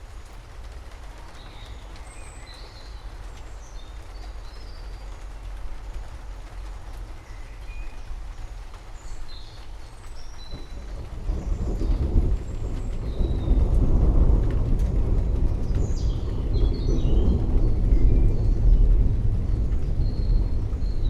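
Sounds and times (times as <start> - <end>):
steady rain: 0.0 - 21.0
songbirds chirping: 0.1 - 21.0
low rumble: 10.4 - 21.0.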